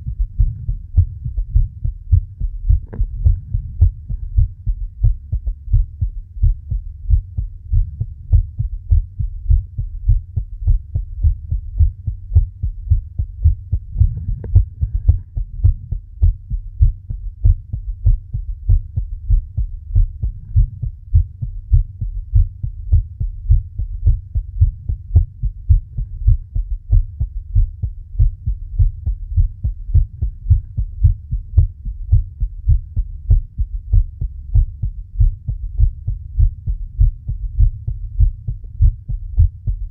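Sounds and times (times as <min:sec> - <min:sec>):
fast heartbeat thumps: 0:00.0 - 0:39.9.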